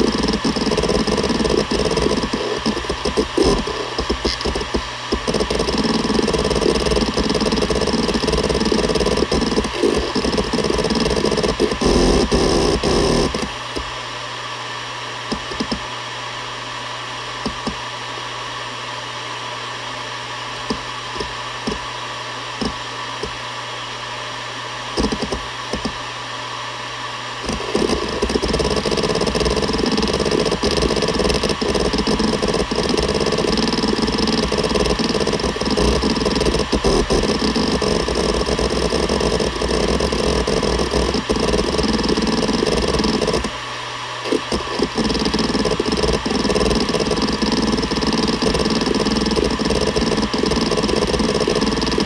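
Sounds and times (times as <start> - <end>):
hard drive head clicks: 0.0 - 13.9, 15.3 - 15.8, 20.6 - 21.8, 25.0 - 26.0, 27.4 - 43.6, 44.3 - 52.0
hard drive spindle whir: 0.0 - 14.1, 15.2 - 16.0, 17.3 - 18.3, 20.5 - 23.6, 24.8 - 26.2, 27.3 - 52.0.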